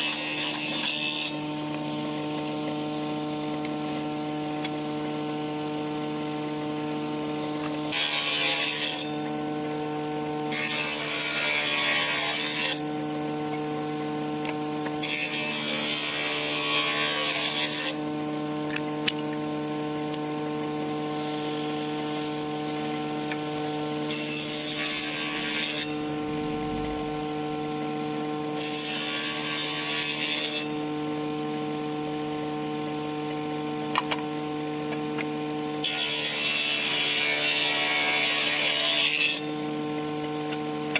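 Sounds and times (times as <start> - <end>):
power tool motor humming: 19.8 - 30.8.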